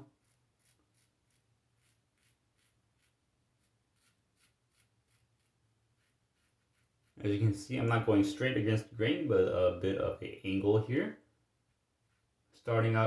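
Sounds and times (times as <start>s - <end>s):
razor scraping stubble: 0.1s - 7.9s.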